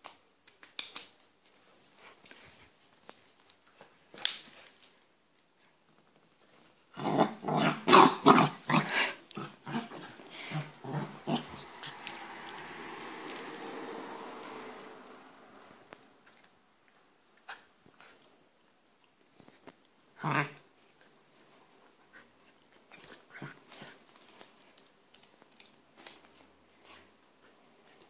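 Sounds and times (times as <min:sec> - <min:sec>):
puppy growling: 0:06.9 - 0:18.2, 0:20.2 - 0:21.2.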